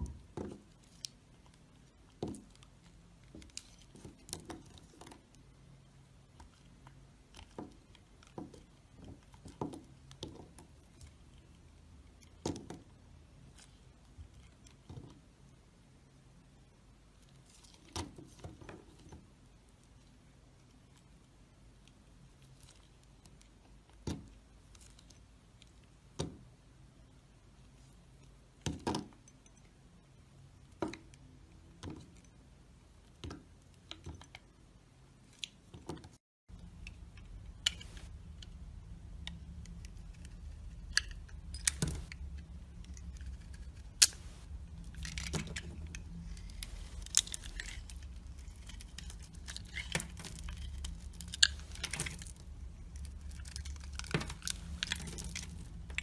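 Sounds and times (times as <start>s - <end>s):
steady low hum: 36.5s - 56.0s.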